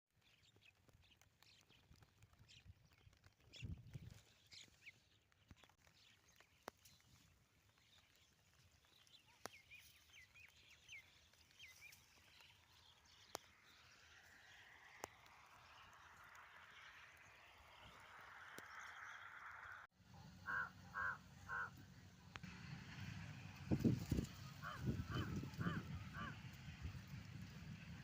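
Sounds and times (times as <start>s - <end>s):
faint outdoor ambience: 0.2s - 28.0s.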